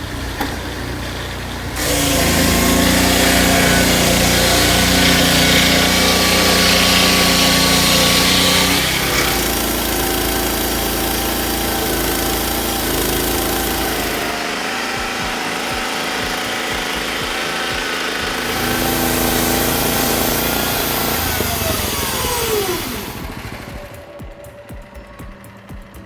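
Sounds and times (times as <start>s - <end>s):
small engine running under load: 0.0s - 26.0s.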